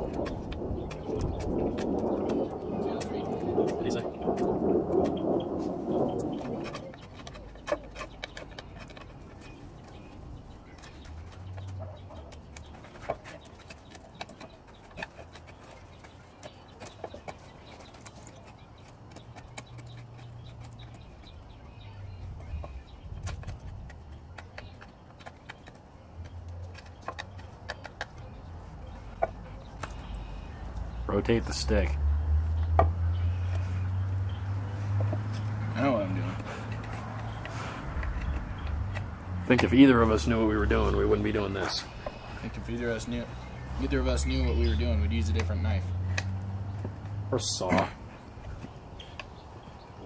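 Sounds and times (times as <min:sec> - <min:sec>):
knife carving wood: 0:06.7 - 0:10.1.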